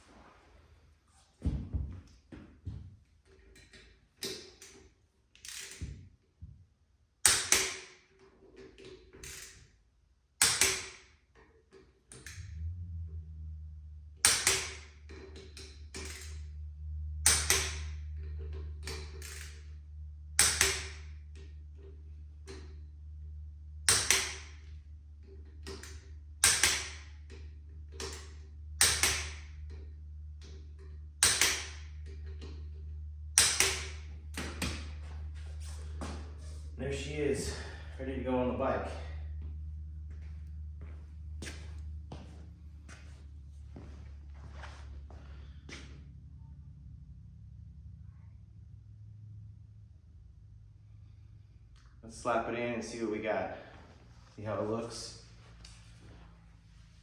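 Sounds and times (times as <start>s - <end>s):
steady low hum: 0.0s - 57.0s
hand tool clicks: 7.2s - 7.9s, 10.4s - 11.0s, 14.2s - 14.8s, 20.4s - 21.0s, 23.9s - 24.5s, 25.7s - 27.0s, 28.8s - 29.4s, 31.2s - 31.9s, 33.4s - 34.0s.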